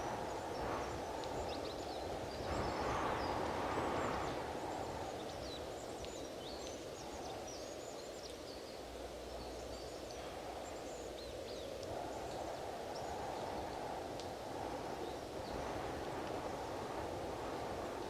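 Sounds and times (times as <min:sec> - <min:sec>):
small birds chirping: 0:00.0 - 0:13.8
wind blowing in gusts: 0:00.0 - 0:18.0.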